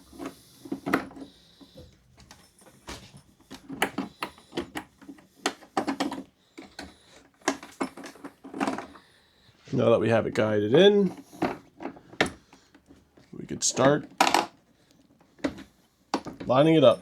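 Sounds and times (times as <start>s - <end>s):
plastic and metal parts clicking: 3.5s - 9.0s.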